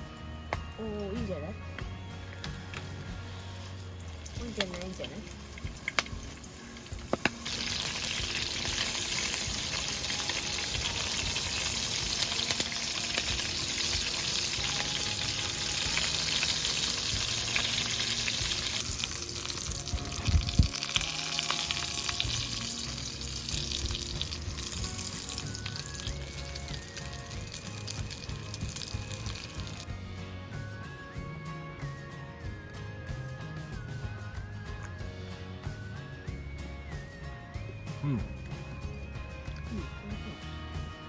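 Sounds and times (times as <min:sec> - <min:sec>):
quiet background music: 0:00.0 - 0:41.0
food sizzling in oil: 0:02.4 - 0:29.9.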